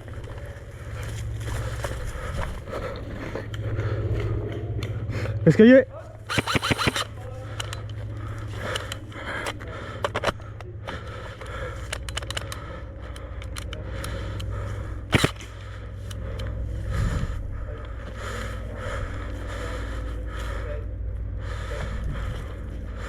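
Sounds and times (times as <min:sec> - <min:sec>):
small clicks and scrapes: 0:06.3 - 0:10.5, 0:11.4 - 0:14.5
low rumble: 0:12.5 - 0:23.0.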